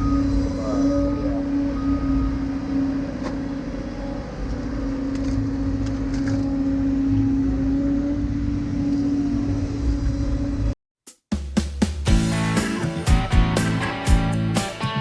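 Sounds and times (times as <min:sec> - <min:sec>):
excavator diesel engine humming: 0:00.0 - 0:10.8.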